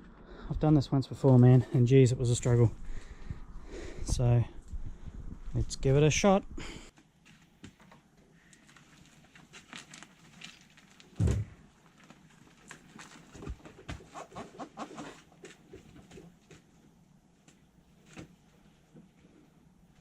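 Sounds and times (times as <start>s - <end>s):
heavy thump: 11.2s - 11.6s.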